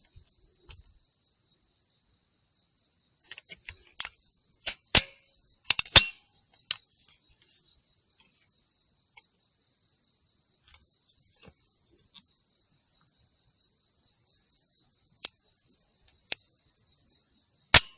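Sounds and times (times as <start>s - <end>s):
insects chirring: 0.0s - 17.9s
rifle mechanical clicks: 5.7s - 6.2s.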